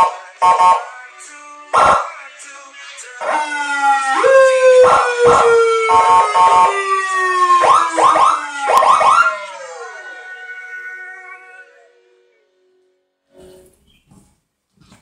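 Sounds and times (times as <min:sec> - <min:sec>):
siren horn blasts: 0:00.0 - 0:00.9, 0:03.2 - 0:10.5
siren horn wailing: 0:00.0 - 0:00.9, 0:03.2 - 0:12.9
siren yelps: 0:03.2 - 0:11.9.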